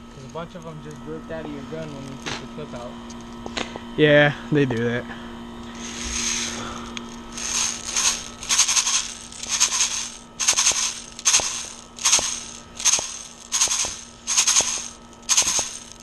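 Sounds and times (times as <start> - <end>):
pellets rattling in a magazine: 5.8 - 16.0.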